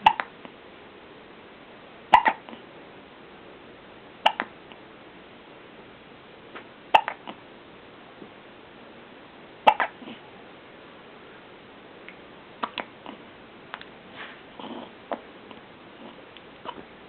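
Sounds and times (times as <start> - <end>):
person hiccuping: 0.0 - 0.2, 2.1 - 2.5, 4.2 - 4.5, 7.0 - 7.3, 9.7 - 10.2.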